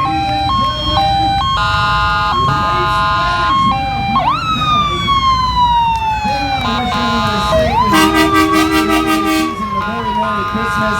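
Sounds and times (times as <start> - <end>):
siren winding up and down: 0.0 - 10.9
deep air horn: 7.0 - 10.8
multi-note truck air horn: 7.2 - 10.8.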